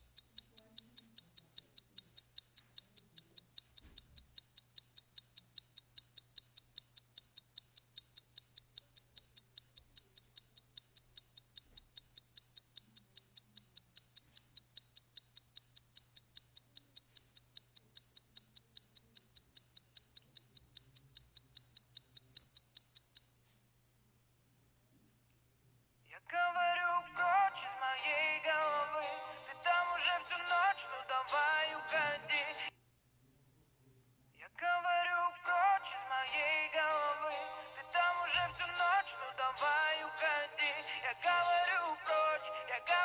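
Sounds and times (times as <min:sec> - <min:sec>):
clock ticking: 0:00.0 - 0:23.3, 0:28.5 - 0:32.7, 0:36.3 - 0:43.0.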